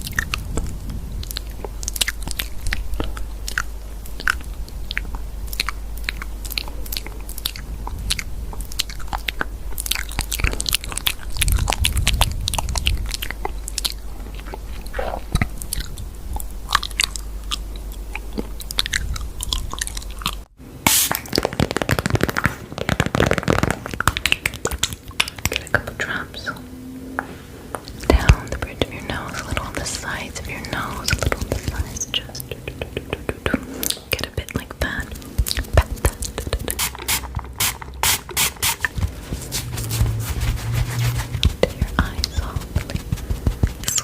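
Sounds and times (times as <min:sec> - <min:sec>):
crunching and chewing: 0:00.0 - 0:20.5, 0:21.1 - 0:25.8, 0:34.8 - 0:44.0
low hum: 0:00.0 - 0:22.0, 0:24.4 - 0:44.0.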